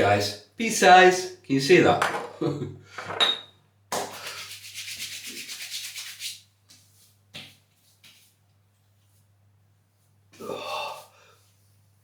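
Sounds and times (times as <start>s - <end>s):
palms rubbing over skin: 4.2s - 7.1s.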